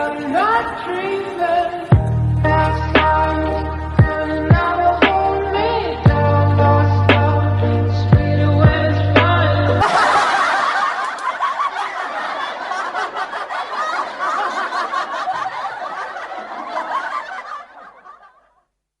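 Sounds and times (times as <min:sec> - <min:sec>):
crowd laughing: 0:09.7 - 0:18.7.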